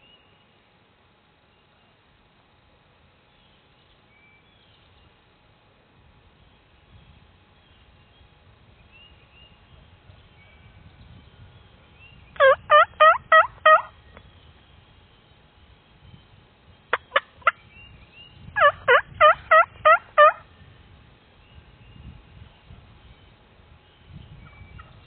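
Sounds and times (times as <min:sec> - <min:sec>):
turkey clucking: 0:12.4 - 0:13.9, 0:16.9 - 0:17.6, 0:18.6 - 0:20.4
turkey yelping: 0:12.4 - 0:13.9, 0:18.6 - 0:20.4.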